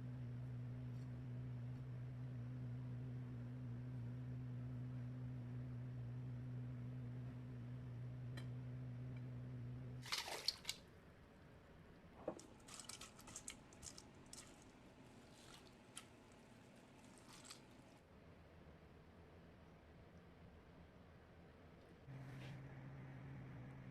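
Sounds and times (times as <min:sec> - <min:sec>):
low steady hum: 0:00.0 - 0:23.9
wet food squishing and dripping: 0:15.3 - 0:17.8.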